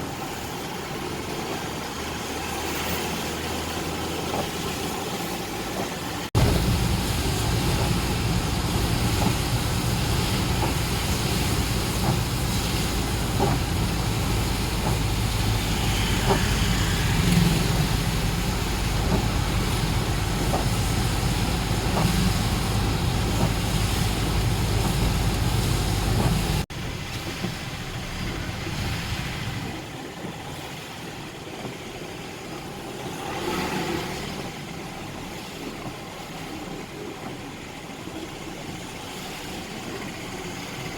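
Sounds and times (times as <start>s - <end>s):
street noise: 0.0s - 40.9s
vehicle engine idling: 6.4s - 27.1s.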